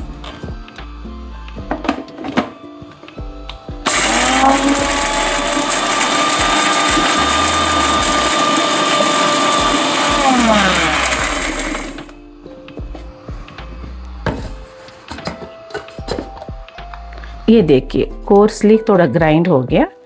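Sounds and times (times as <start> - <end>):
mixer grinder grinding spices: 3.9 - 12.2, 12.9 - 17.4.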